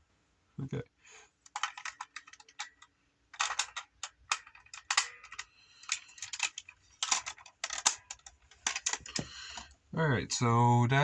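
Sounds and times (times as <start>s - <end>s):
plastic toy clicking: 1.4s - 9.7s.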